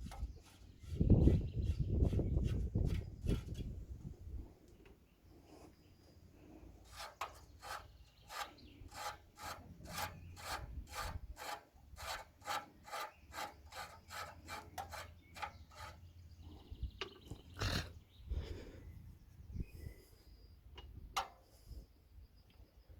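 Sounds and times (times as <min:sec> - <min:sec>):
scraping strokes by hand: 0:00.0 - 0:03.8, 0:06.4 - 0:16.2.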